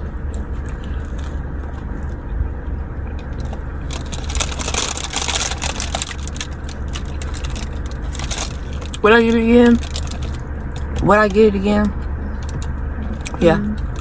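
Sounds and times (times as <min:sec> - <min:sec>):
car engine low rumble: 0:00.0 - 0:14.0
crinkling rustling crackle: 0:03.2 - 0:11.0.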